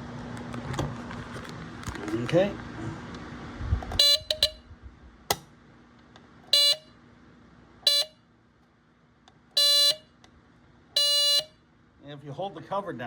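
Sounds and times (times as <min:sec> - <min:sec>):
smoke alarm beeping: 0:04.0 - 0:04.6, 0:06.5 - 0:06.9, 0:07.9 - 0:08.2, 0:09.6 - 0:10.1, 0:11.0 - 0:11.6.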